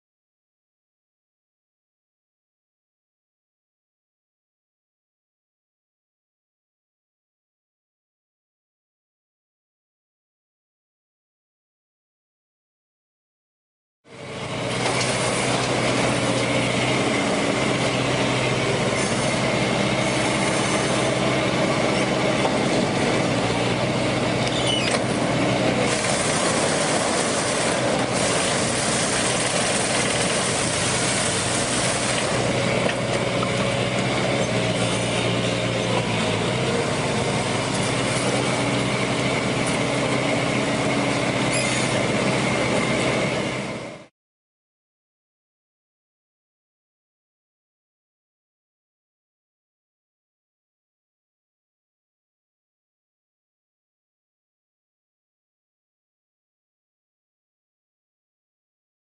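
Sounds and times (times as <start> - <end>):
engine-like hum: 14.1 - 44.1
machine running: 14.1 - 44.1.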